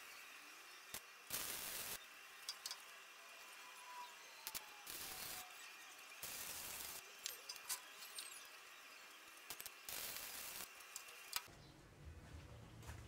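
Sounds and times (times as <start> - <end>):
hiss bursts: 0.9 - 2.0, 9.6 - 11.4
metallic clicks and clinks: 6.9 - 8.5.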